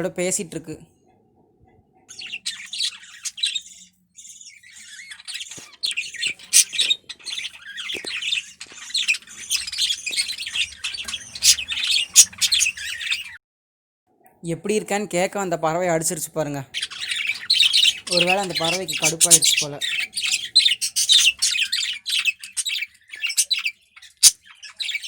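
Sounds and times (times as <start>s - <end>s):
budgerigars chattering and squawking: 2.1s - 13.4s, 16.7s - 25.0s.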